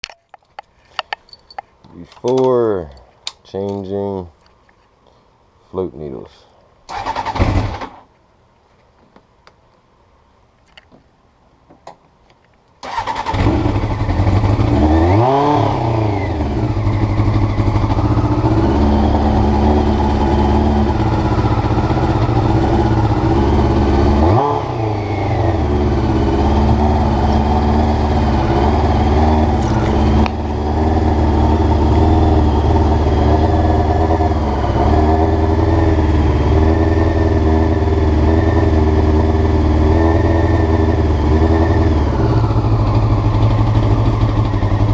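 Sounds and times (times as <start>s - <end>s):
motorcycle engine starting and idling: 6.9s - 8.1s, 12.8s - 44.9s.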